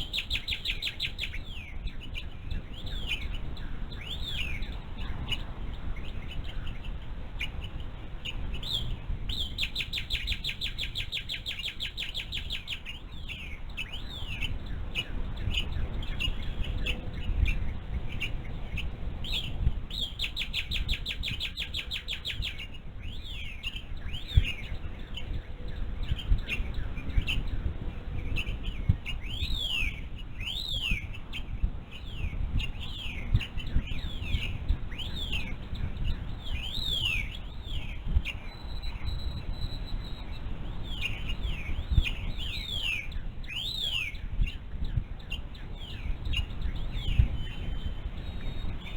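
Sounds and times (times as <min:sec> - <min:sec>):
bird trills: 0:00.0 - 0:48.9
down-slurred whistled bird notes: 0:28.2 - 0:48.9.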